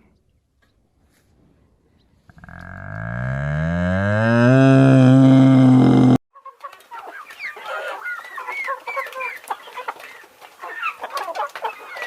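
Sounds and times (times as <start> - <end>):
chickens clucking: 6.4 - 12.0.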